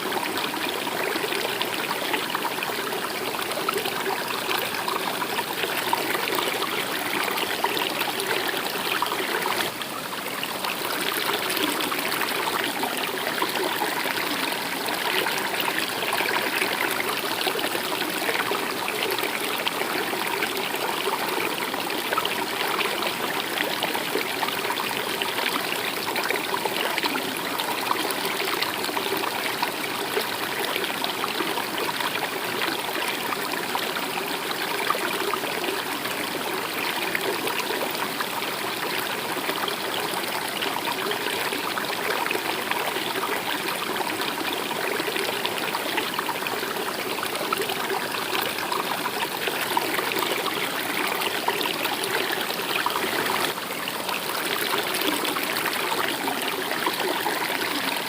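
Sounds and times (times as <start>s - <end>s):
stream running and trickling: 0.0s - 58.0s.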